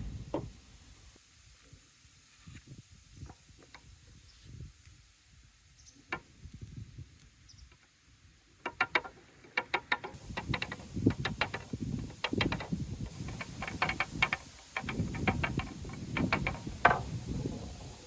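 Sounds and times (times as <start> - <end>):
balls clicking and knocking: 8.6 - 18.0
balls rolling rumble: 8.6 - 18.0.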